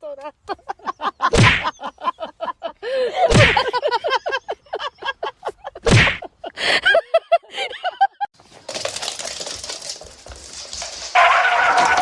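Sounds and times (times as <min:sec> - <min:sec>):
loud swishing whooshes: 0:01.4 - 0:01.6.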